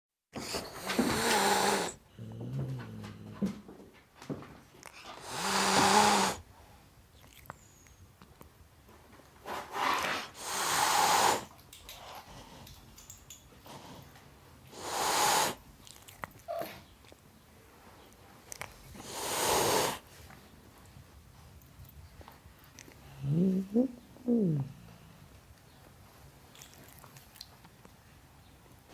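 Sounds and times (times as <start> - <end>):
cat hissing: 0.4 - 2.0, 5.0 - 6.4, 9.5 - 11.6, 14.7 - 15.6, 19.0 - 20.0.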